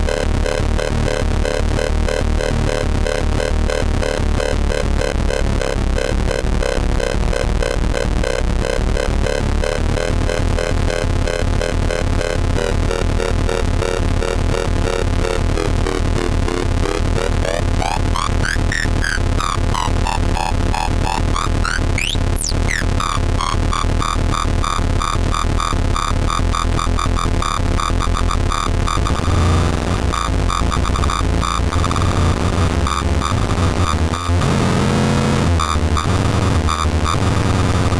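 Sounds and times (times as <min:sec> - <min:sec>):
buzzing square-wave synthesizer tones: 0:04.4 - 0:37.9
fast pulsing low synth: 0:14.1 - 0:24.9.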